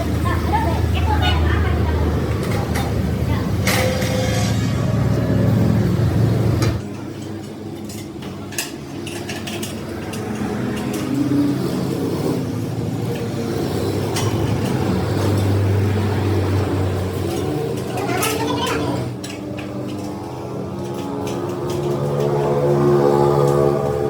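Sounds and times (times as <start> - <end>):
workshop machinery humming: 0.0 - 24.0.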